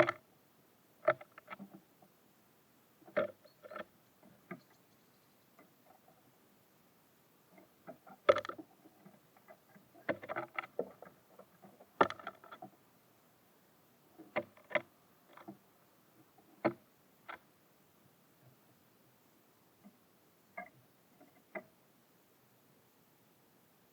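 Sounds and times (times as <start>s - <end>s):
birds pecking on wooden feeder: 0.0s - 0.2s, 1.0s - 2.1s, 3.0s - 4.8s, 7.5s - 12.8s, 14.2s - 17.5s.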